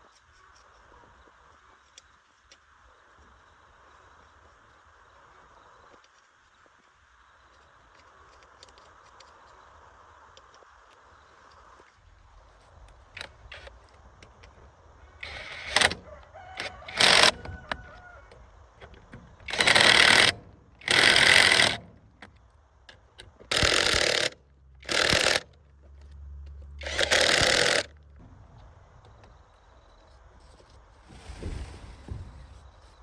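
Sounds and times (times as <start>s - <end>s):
power tool bursts: 15.2s - 18.0s, 19.4s - 22.2s, 23.5s - 25.5s, 26.8s - 27.9s.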